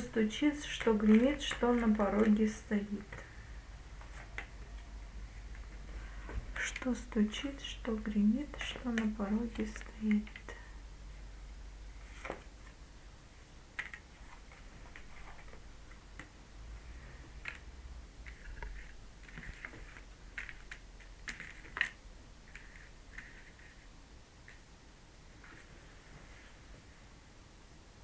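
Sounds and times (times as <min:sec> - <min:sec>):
cards clicking and tapping: 0:00.5 - 0:03.4, 0:04.0 - 0:04.9, 0:08.5 - 0:10.7, 0:13.7 - 0:16.4, 0:17.2 - 0:23.8
cards rustling on a table: 0:00.6 - 0:06.8, 0:12.0 - 0:12.8, 0:13.7 - 0:24.6.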